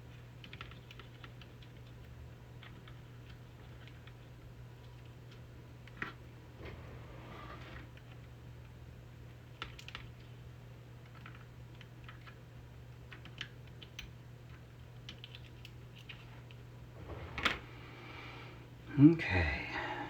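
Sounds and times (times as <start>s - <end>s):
steady low hum: 1.3s - 10.9s, 14.1s - 20.0s.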